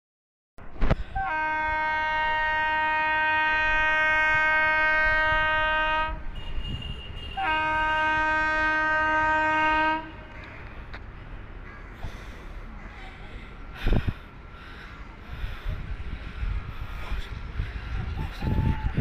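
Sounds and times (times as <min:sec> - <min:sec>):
locomotive horn blasts: 0:01.1 - 0:10.3, 0:18.4 - 0:19.0.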